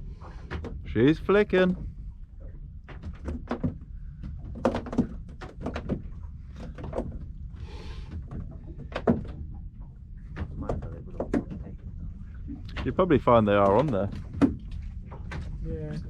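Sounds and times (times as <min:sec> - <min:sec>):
steady low rumble: 0:00.0 - 0:16.0
knocks and clicks of gear: 0:02.8 - 0:07.3, 0:12.7 - 0:15.6.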